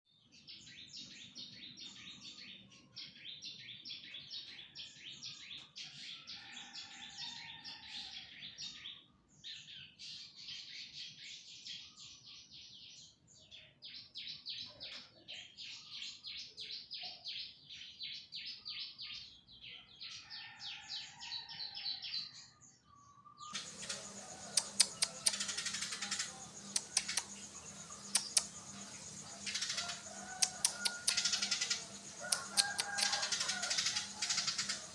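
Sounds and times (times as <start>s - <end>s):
birds chirping: 23.5s - 34.9s
sharp clicks and taps: 23.6s - 34.9s.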